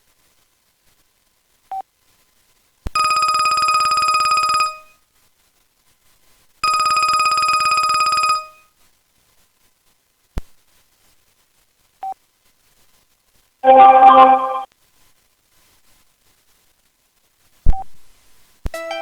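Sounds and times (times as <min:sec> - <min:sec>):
short beep: 0:13.6 - 0:14.7
trilling phone ringtone: 0:13.6 - 0:14.7.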